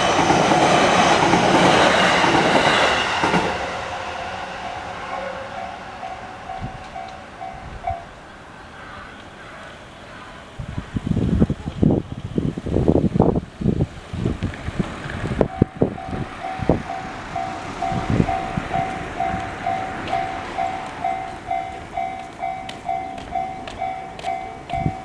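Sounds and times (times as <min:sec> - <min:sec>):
wind rumbling on microphone: 0:06.4 - 0:08.2, 0:10.5 - 0:25.0
level crossing bell: 0:15.5 - 0:25.0.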